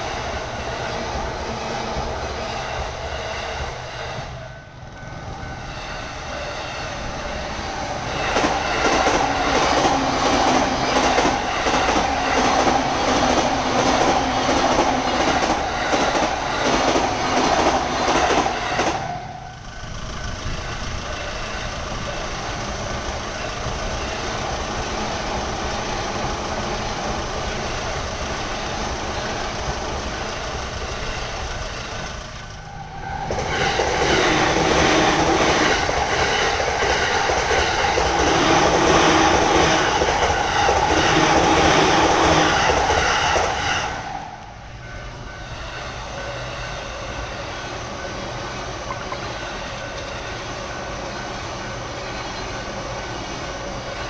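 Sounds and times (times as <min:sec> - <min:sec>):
crossing warning bell ringing: 0:00.0 - 0:54.0
train wheels clattering over rail joints: 0:08.1 - 0:19.2, 0:33.3 - 0:43.9.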